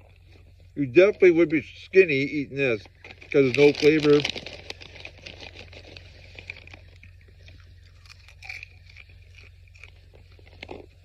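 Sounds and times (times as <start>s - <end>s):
person chewing popcorn: 2.6s - 11.0s.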